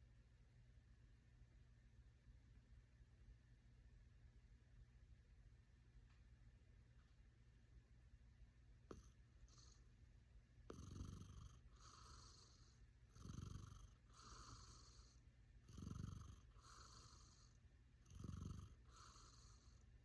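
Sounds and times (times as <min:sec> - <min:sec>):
faint breathing hiss: 0:06.9 - 0:20.0
cat snoring softly: 0:08.9 - 0:10.0, 0:10.6 - 0:20.0.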